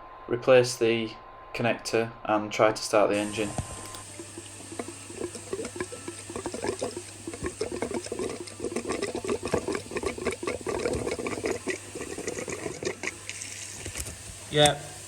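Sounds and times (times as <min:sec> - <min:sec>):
crackly pops and bubbling: 0:03.5 - 0:14.8
fuel spluttering and gurgling in line: 0:04.0 - 0:14.2.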